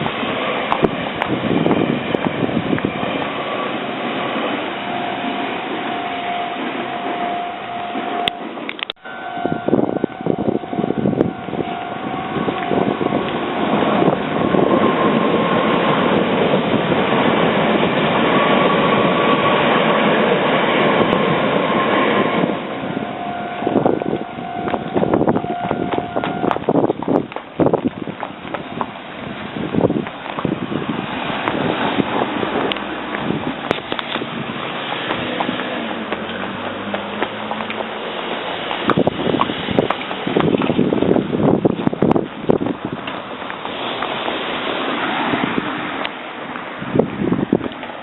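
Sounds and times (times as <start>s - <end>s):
train running noise: 0.0s - 48.0s
level crossing warning bell: 2.9s - 16.5s, 18.9s - 27.0s.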